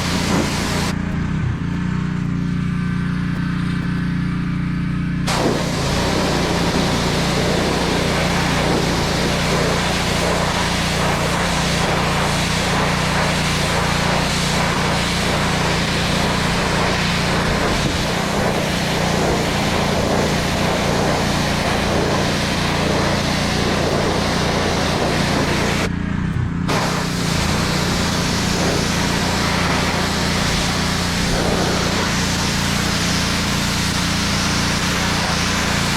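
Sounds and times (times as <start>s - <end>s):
water jet spraying onto fence: 0.0s - 1.4s, 5.3s - 25.9s, 26.7s - 35.9s
pressure washer engine running: 0.0s - 35.9s.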